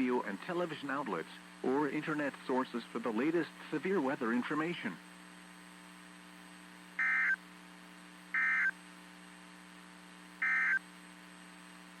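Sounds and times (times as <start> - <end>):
steady receiver hum: 0.0 - 12.0
buzzy digital tone bursts: 7.0 - 7.4, 8.4 - 8.7, 10.4 - 10.8.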